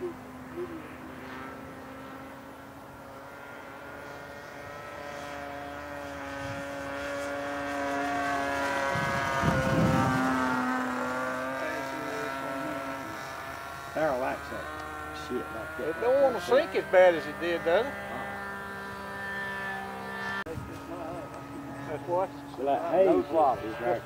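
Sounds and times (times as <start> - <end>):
model airplane engine buzzing: 0.0 - 24.0.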